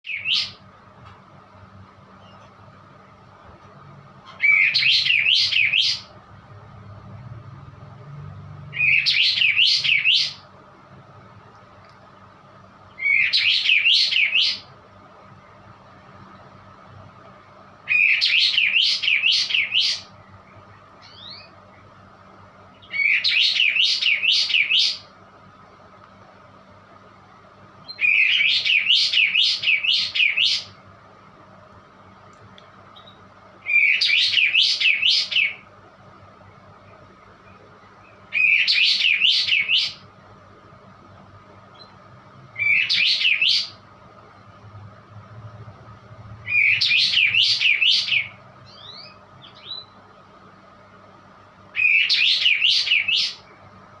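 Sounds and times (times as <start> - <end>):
songbird calling: 0.0 - 0.6, 4.3 - 6.2, 8.7 - 10.5, 13.0 - 14.7, 17.9 - 21.6, 22.8 - 25.1, 27.8 - 30.8, 32.9 - 35.7, 37.4 - 40.1, 42.6 - 43.8, 46.5 - 50.0, 51.7 - 53.6
bird singing repeated notes: 0.0 - 0.7, 2.1 - 2.6, 4.2 - 6.2, 8.6 - 10.6, 12.9 - 14.8, 17.8 - 22.0, 22.6 - 25.2, 27.8 - 30.8, 32.9 - 35.7, 36.9 - 40.1, 41.7 - 43.9, 46.4 - 50.0, 51.7 - 53.6.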